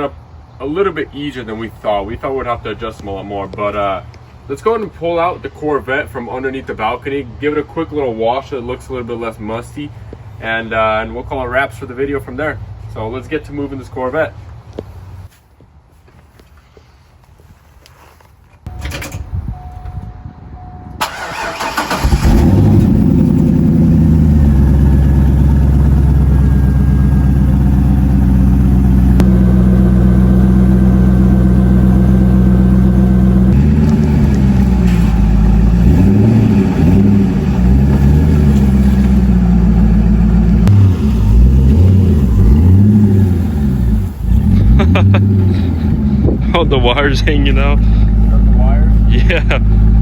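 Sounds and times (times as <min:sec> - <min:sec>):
car engine starting and idling: 0:20.9 - 0:50.0
engine revving: 0:21.0 - 0:50.0.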